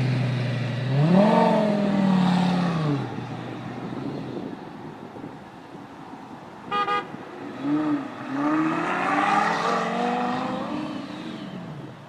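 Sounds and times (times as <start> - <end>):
car engine revving: 0.9 - 3.1, 7.4 - 11.6
car horn toots: 6.7 - 7.2.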